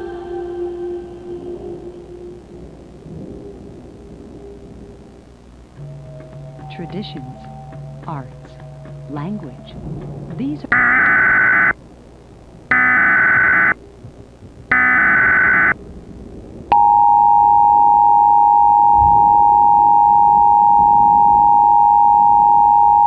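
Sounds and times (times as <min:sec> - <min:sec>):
two-tone attention signal: 0:10.6 - 0:11.7, 0:12.7 - 0:13.8, 0:14.7 - 0:15.8, 0:16.7 - 0:23.0
warbling data screech: 0:10.7 - 0:11.8, 0:12.7 - 0:13.8, 0:14.7 - 0:15.8.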